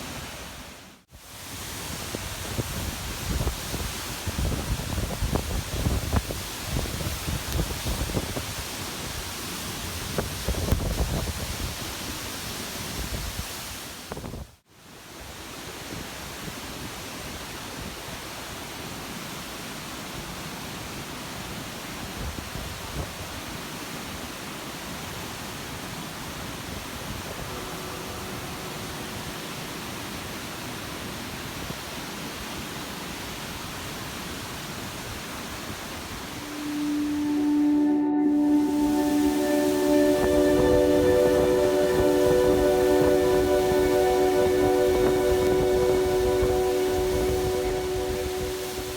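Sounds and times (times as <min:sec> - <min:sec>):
waterfall rushing: 0:23.5 - 0:48.9
music: 0:36.4 - 0:48.9.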